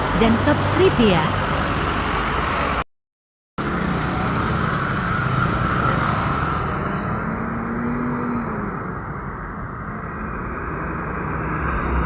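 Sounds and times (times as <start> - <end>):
traffic noise: 0.0 - 2.8, 3.6 - 12.0
vehicle engine running: 3.6 - 6.8.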